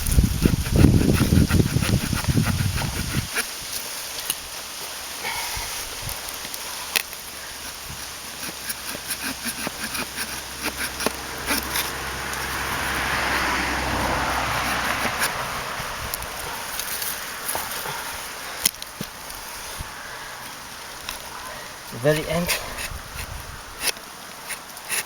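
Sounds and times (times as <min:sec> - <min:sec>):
saw blade rasping through wood: 0:00.0 - 0:03.9, 0:07.4 - 0:18.7, 0:21.9 - 0:25.0.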